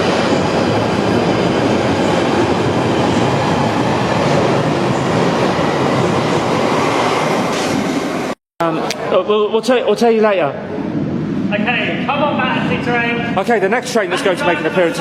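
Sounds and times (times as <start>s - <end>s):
train wheels on rail echoing: 0.0s - 8.4s.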